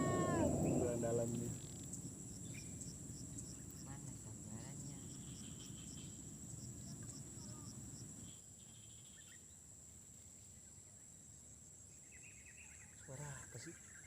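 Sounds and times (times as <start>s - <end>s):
low rumble: 0.0s - 3.8s
insects droning: 0.0s - 14.0s.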